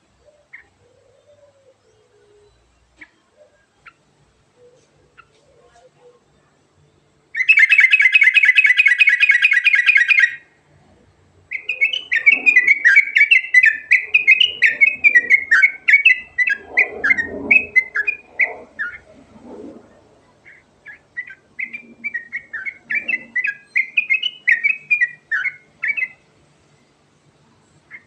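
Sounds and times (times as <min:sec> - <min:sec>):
bulbul singing: 0:07.0 - 0:10.5, 0:11.5 - 0:19.1, 0:20.4 - 0:27.0.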